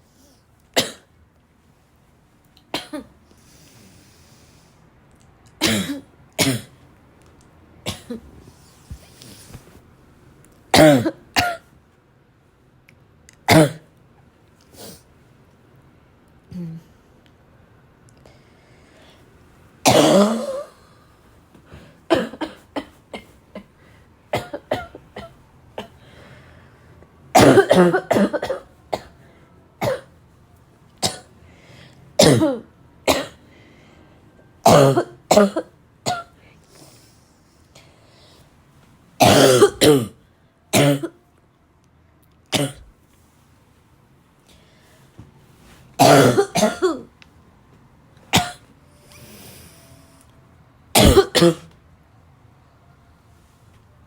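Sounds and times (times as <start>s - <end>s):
woman coughing: 2.8s - 3.1s, 5.6s - 6.7s, 7.9s - 8.3s, 10.8s - 11.6s, 19.9s - 20.8s, 22.1s - 23.3s, 24.4s - 25.9s, 27.4s - 29.1s, 32.2s - 33.4s, 34.7s - 36.3s, 39.2s - 40.2s, 40.8s - 41.2s, 46.0s - 47.1s, 48.4s - 48.6s, 51.0s - 51.8s.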